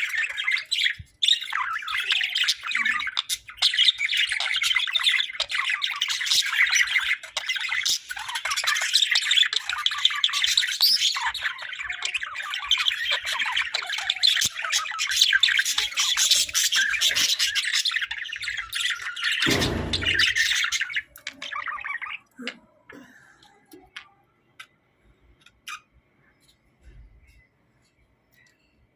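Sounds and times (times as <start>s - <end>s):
budgerigars chattering and chirping: 0.0s - 22.6s, 25.4s - 26.0s.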